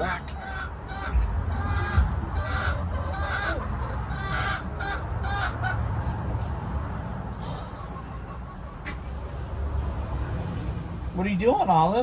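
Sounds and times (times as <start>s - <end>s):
hens squawking: 0.0s - 6.2s.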